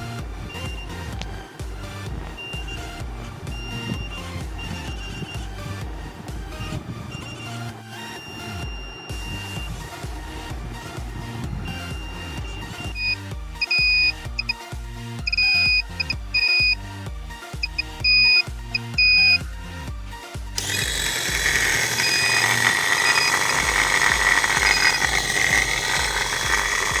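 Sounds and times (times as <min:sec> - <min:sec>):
background music: 0:00.0 - 0:27.0
electronic buzzer beeping: 0:06.6 - 0:09.8, 0:11.7 - 0:14.6, 0:15.2 - 0:16.8, 0:17.6 - 0:19.4, 0:20.6 - 0:27.0.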